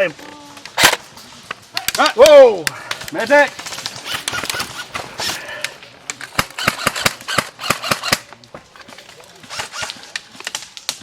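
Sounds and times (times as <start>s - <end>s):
airsoft guns firing: 0.7s - 1.1s, 3.1s - 8.3s, 9.4s - 10.1s.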